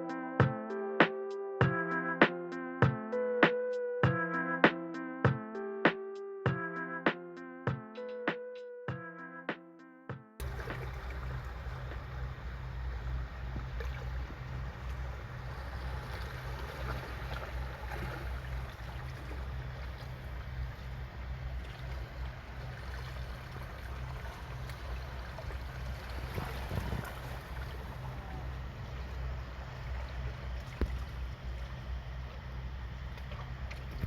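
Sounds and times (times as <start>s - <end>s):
wind buffeting microphone: 10.4s - 31.4s.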